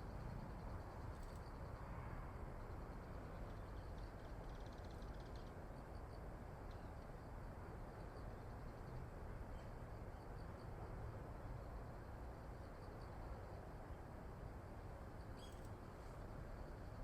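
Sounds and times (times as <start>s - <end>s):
faint high ticks: 1.0s - 1.6s, 3.4s - 5.6s.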